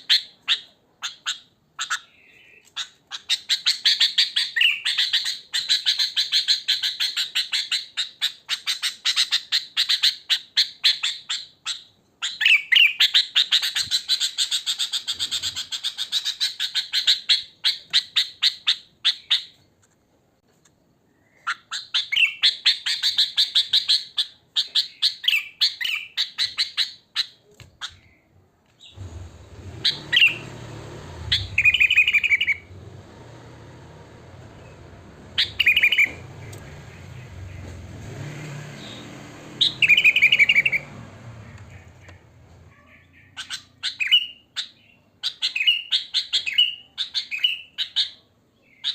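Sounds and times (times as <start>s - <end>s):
bulbul calling: 28.8s - 32.9s, 34.4s - 38.0s, 38.7s - 48.9s.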